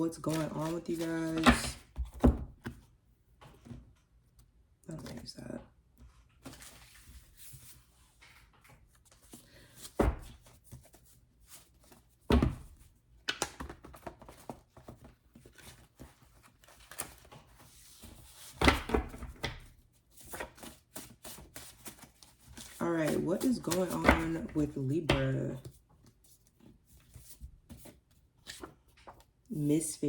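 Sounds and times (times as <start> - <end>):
cards being shuffled: 0.2 - 2.3, 13.3 - 26.2.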